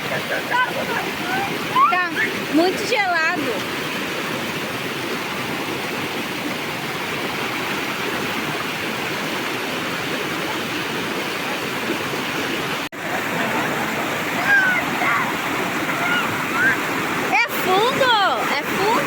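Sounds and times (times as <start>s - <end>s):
river water rushing over rocks: 0.0s - 19.0s.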